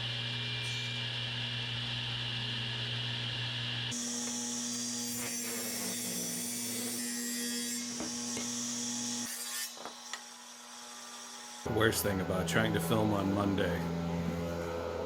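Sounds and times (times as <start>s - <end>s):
saw cutting wood: 3.9s - 15.0s.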